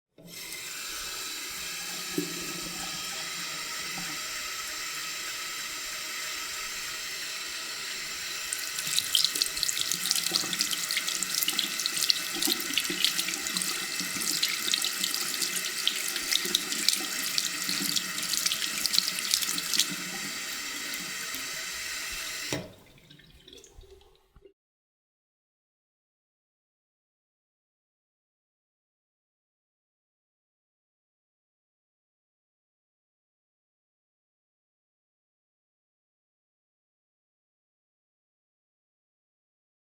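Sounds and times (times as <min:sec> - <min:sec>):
tap water running into sink: 0:00.2 - 0:24.5
hands washing under water: 0:08.3 - 0:24.1.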